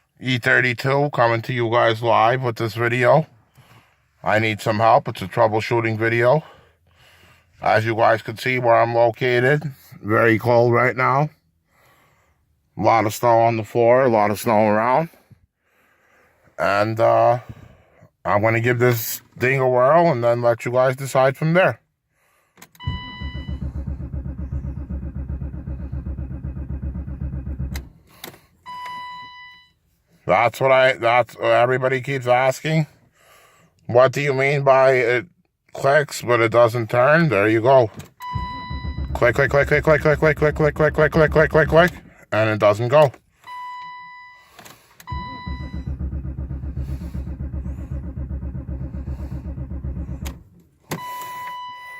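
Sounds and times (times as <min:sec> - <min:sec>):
car starter clicking: 0:22.6 - 0:29.0, 0:38.0 - 0:42.2, 0:44.6 - 0:51.6
electronic warning beep: 0:22.8 - 0:23.6, 0:38.2 - 0:39.2, 0:45.1 - 0:45.8.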